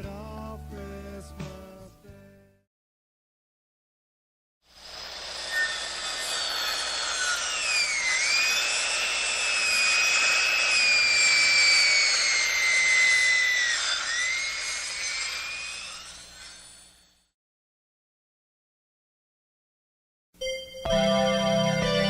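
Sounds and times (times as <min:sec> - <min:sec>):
sawmill saw whining: 0:04.7 - 0:17.3.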